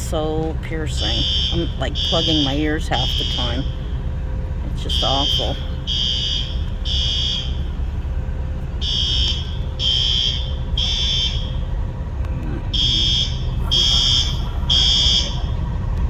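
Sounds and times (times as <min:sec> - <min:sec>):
low rumble: 0:00.0 - 0:16.0
fire alarm beeping: 0:00.8 - 0:04.0, 0:04.7 - 0:07.9, 0:08.8 - 0:11.8, 0:12.7 - 0:15.8.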